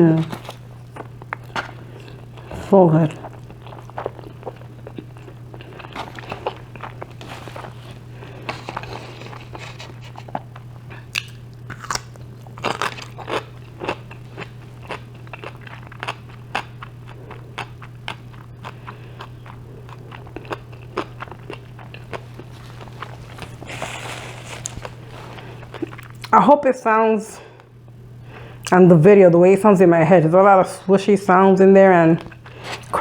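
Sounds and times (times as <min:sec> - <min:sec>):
crunching vegetables: 0:00.0 - 0:26.4
steady low hum: 0:00.0 - 0:33.0
close chewing mouth sounds: 0:00.2 - 0:26.4.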